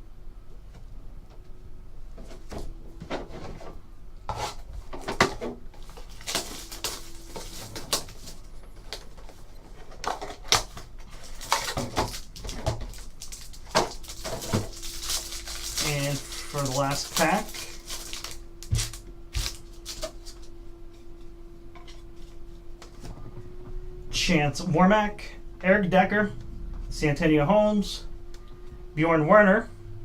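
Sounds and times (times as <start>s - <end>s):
trading cards and packaging handled: 4.4s - 21.2s.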